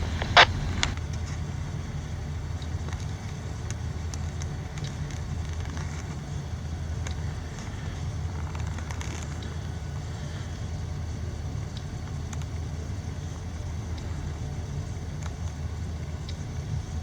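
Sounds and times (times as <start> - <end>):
diesel locomotive engine rumble: 0.0 - 1.0
light ticks: 0.0 - 1.0.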